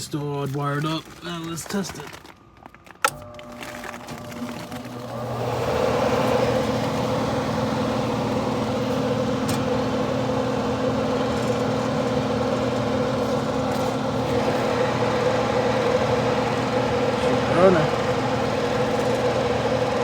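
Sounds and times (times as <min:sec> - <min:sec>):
blower motor hum: 0:01.0 - 0:20.0
air rushing through blower: 0:05.1 - 0:20.0.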